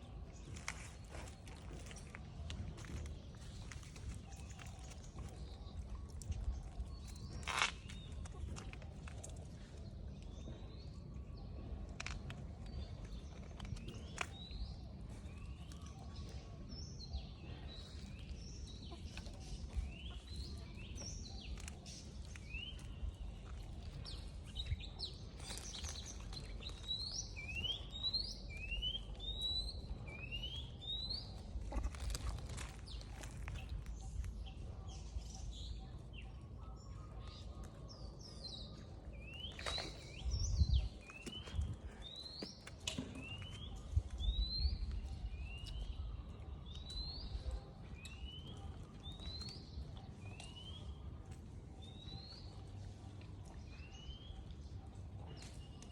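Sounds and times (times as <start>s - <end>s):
birds chirping: 0.0s - 55.9s.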